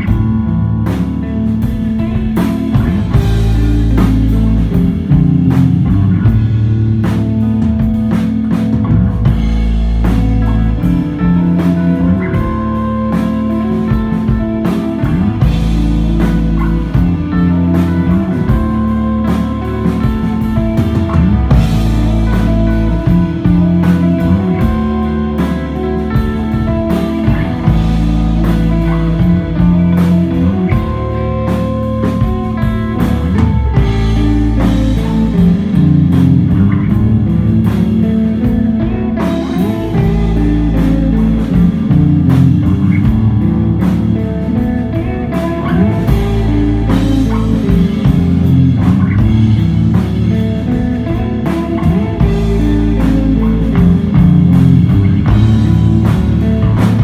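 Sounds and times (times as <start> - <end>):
live instrumental rock band: 0.0 - 57.0.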